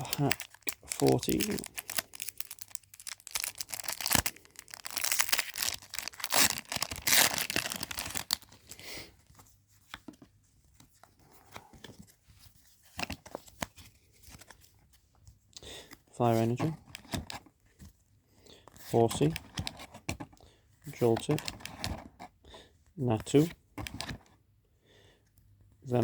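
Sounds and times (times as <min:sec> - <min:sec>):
foil wrapper tearing and crinkling: 0:00.0 - 0:08.6.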